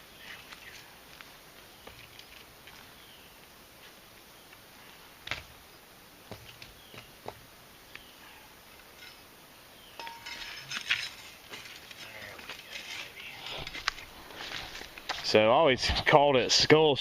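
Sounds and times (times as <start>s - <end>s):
metal shovel clinking on rock: 8.9s - 9.3s, 10.0s - 14.0s
shovel scraping ash: 10.0s - 15.3s.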